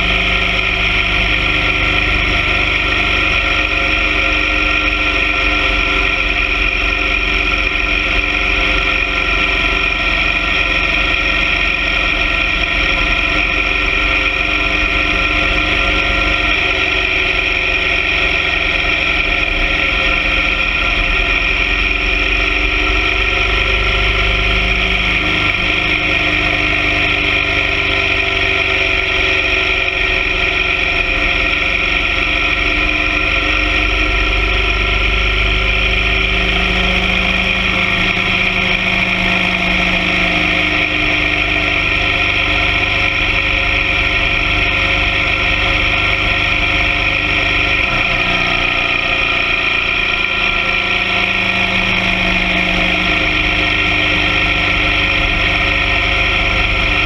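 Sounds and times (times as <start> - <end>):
motorcycle engine running: 0.0 - 57.0.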